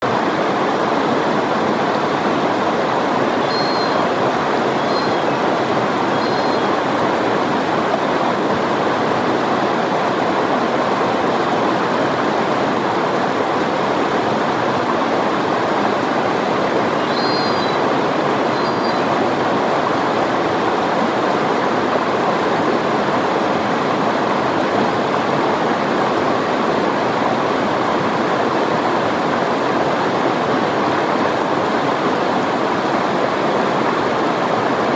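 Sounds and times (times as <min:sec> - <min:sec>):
river water rushing: 0:00.0 - 0:34.9
short high chirps: 0:03.5 - 0:04.0.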